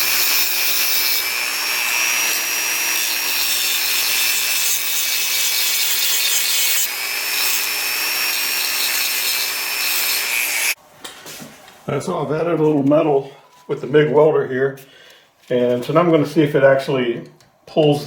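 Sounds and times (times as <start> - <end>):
welder arc running: 0.0 - 10.8.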